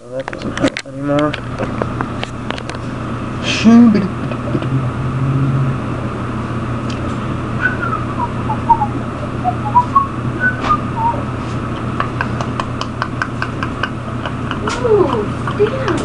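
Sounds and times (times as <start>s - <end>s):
steady low hum: 0.0s - 16.0s
person whistling a tune: 7.6s - 11.2s.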